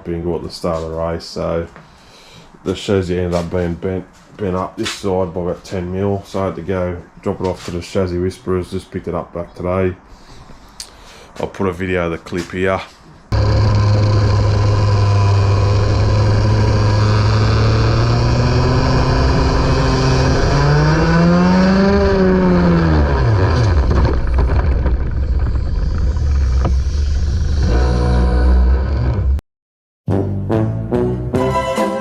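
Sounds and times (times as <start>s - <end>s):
go-kart engine revving: 13.3s - 26.8s.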